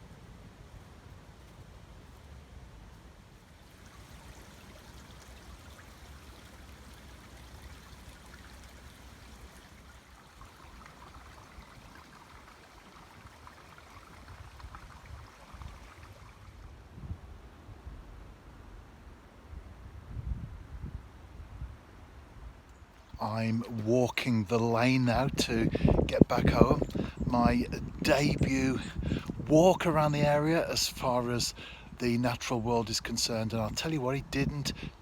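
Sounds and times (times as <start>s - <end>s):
brook water rushing and babbling: 3.3s - 17.0s, 22.7s - 35.0s.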